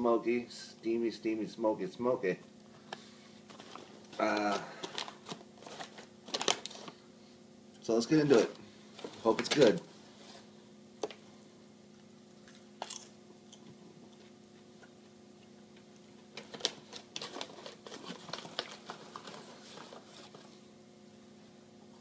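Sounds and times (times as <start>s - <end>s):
person chewing popcorn: 12.0s - 19.2s.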